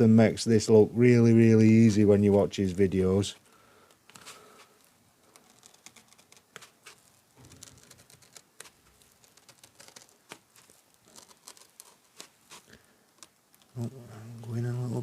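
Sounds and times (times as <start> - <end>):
knife cutting foam: 4.0 - 13.7.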